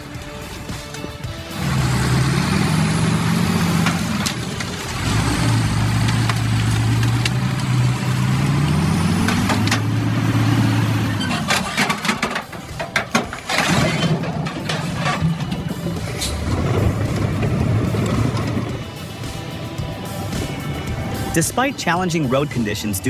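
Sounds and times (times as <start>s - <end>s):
heavy vehicle engine running: 0.0s - 22.7s
sharp knocks and clatter: 3.1s - 10.2s, 11.0s - 19.4s.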